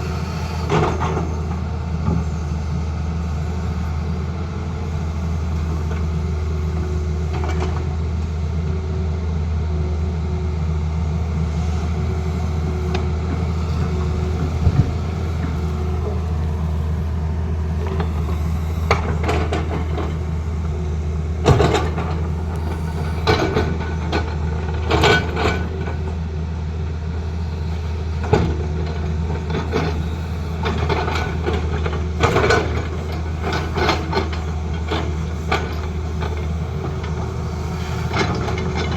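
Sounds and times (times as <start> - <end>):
excavator diesel engine running: 0.0 - 38.9
short knocks and scrapes: 13.7 - 15.6.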